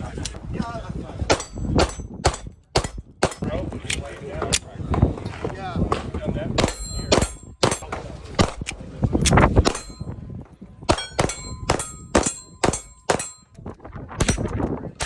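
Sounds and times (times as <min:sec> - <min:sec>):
steel targets clanging: 0:01.3 - 0:03.4, 0:06.6 - 0:08.6, 0:09.6 - 0:10.2, 0:10.9 - 0:13.6
gunshots: 0:01.3 - 0:03.5, 0:06.6 - 0:08.7, 0:09.6 - 0:10.0, 0:10.9 - 0:13.4.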